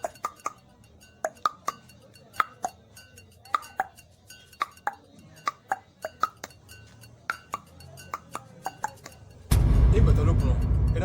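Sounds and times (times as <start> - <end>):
tongue clicks and pops: 1.2 - 2.8.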